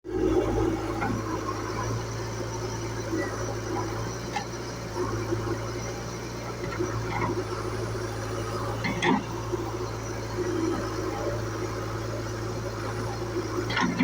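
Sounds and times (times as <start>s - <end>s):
diesel engine running: 0.0s - 14.0s.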